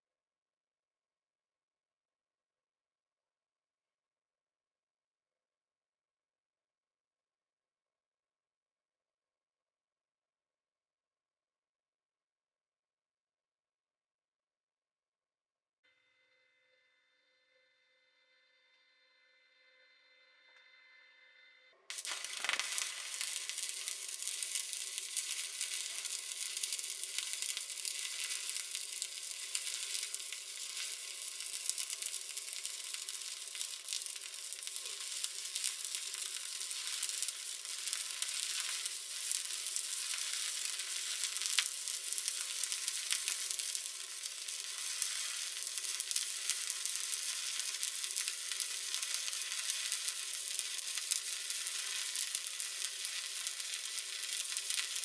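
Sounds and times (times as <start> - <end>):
welding arc hissing crackle: 21.9 - 55.0.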